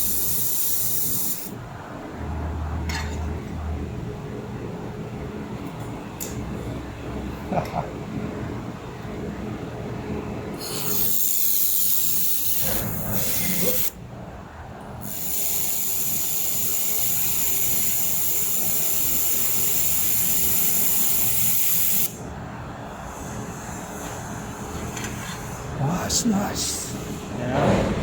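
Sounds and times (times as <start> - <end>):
laser welder hissing: 0.0 - 1.5, 10.6 - 13.9, 15.1 - 22.1.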